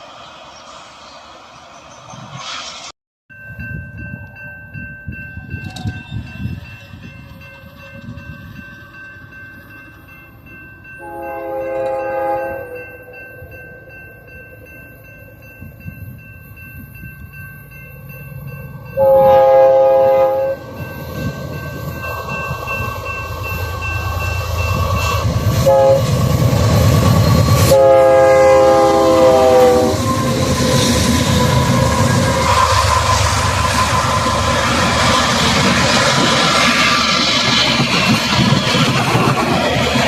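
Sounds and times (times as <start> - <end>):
freight train rumble: 0.0 - 40.0
locomotive air horn: 11.0 - 12.9, 19.0 - 20.6, 25.6 - 26.2, 27.6 - 30.4.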